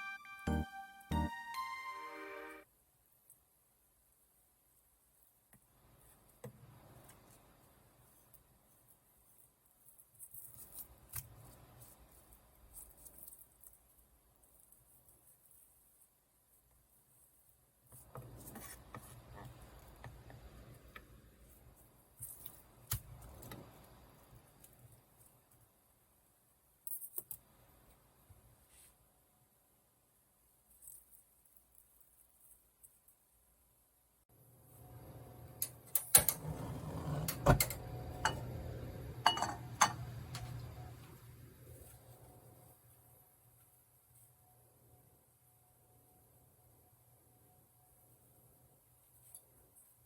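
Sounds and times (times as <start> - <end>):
utensils and dishes clinking: 39.3 - 40.1.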